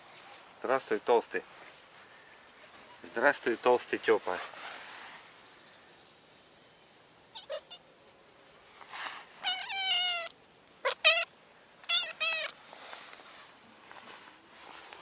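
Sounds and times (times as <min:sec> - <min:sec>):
cat meowing: 0:07.4 - 0:07.8, 0:09.4 - 0:12.6.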